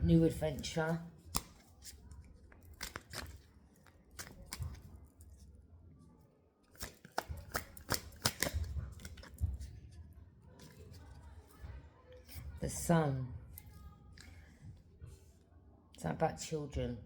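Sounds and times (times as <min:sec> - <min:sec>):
cards being shuffled: 0:00.6 - 0:05.4, 0:06.7 - 0:09.8.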